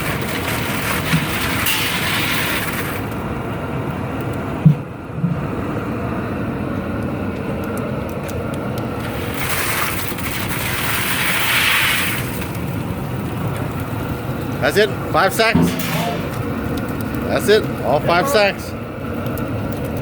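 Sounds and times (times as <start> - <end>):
propane burner roaring: 0.0 - 20.0
loud low thump: 15.6 - 16.6.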